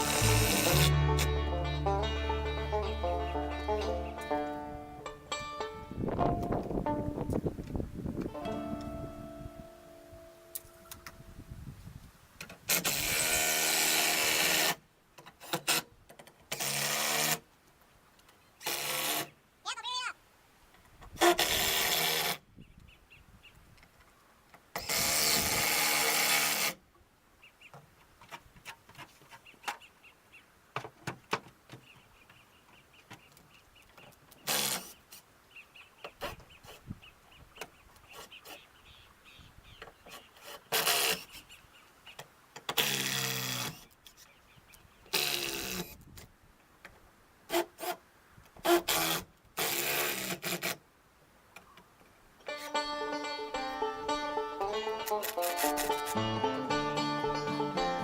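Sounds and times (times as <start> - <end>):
handheld power tool running: 0.0 - 0.9.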